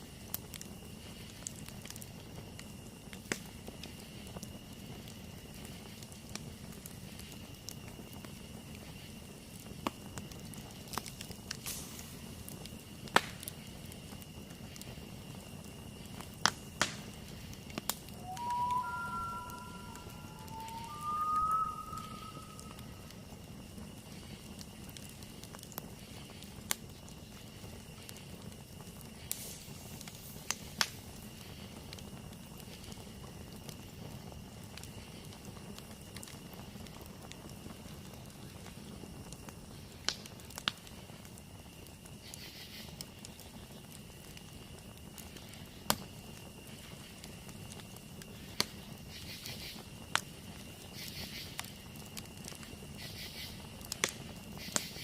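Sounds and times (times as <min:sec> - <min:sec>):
campfire burning: 0:00.0 - 0:55.0
fire crackling and popping: 0:00.0 - 0:55.0
faint high-pitched tone: 0:18.2 - 0:23.2.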